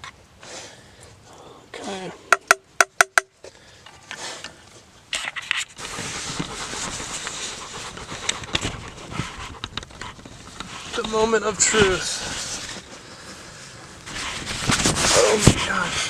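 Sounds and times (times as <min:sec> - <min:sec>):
dog panting: 0:05.8 - 0:11.0.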